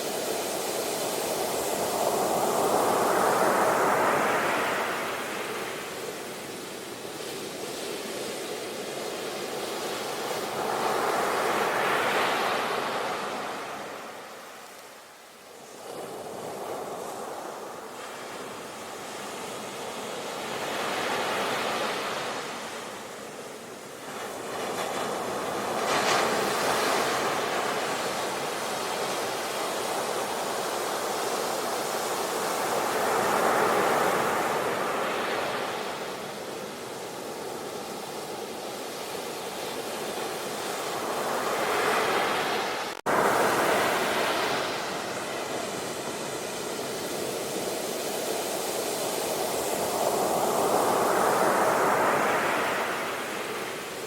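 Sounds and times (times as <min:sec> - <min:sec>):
ocean waves breaking: 0:39.5 - 0:54.0.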